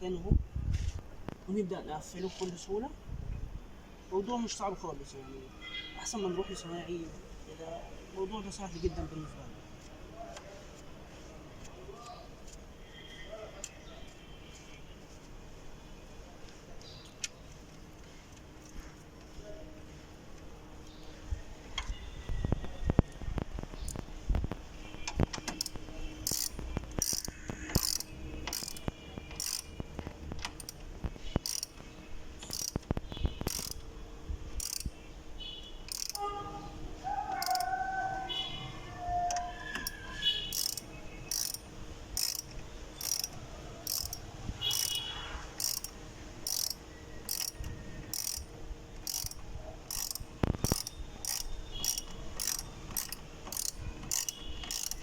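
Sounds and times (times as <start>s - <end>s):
ratchet wrench clicking: 25.5s - 29.7s, 30.4s - 30.8s, 31.4s - 31.8s, 32.4s - 32.9s, 33.5s - 33.8s, 34.6s - 35.0s, 35.9s - 36.2s, 37.3s - 37.7s, 39.7s - 55.0s.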